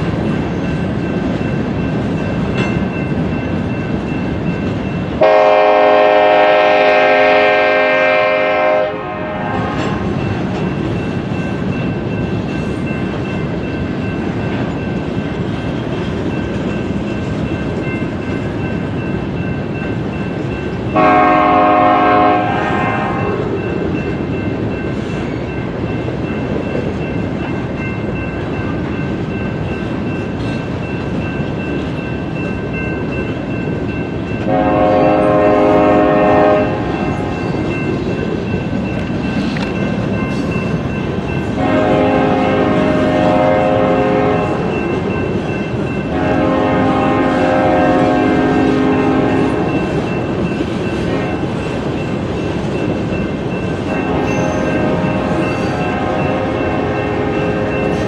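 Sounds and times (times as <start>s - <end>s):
passing train rumble: 0.0s - 58.0s
train air horn blasts: 5.2s - 10.0s, 21.0s - 23.5s, 34.5s - 36.9s, 41.6s - 44.7s, 46.1s - 49.7s, 53.9s - 58.0s.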